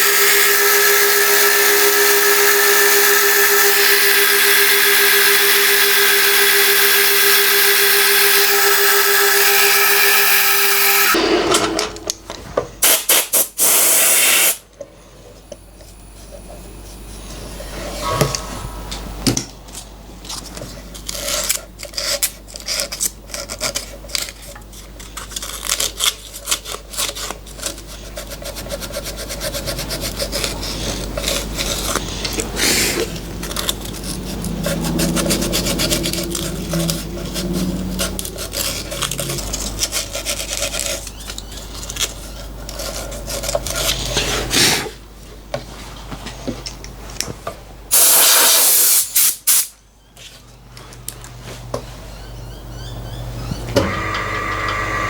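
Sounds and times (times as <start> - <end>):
loud hiss: 0.0 - 11.6, 12.8 - 14.6, 47.9 - 49.7
milling machine motor hum: 0.0 - 12.2, 53.6 - 55.0
cutter scraping and clicking: 21.0 - 44.3.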